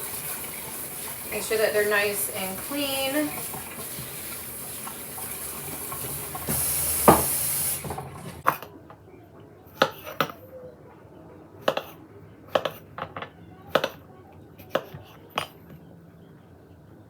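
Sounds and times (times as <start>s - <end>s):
kitchen tap running: 0.0s - 8.6s
kitchenware clinking and knocking: 2.6s - 8.8s, 12.5s - 14.0s, 14.8s - 15.8s.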